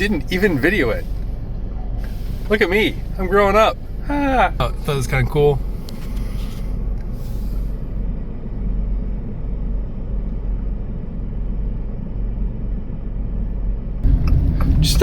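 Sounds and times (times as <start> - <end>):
road and engine rumble in car cabin: 0.0 - 15.0.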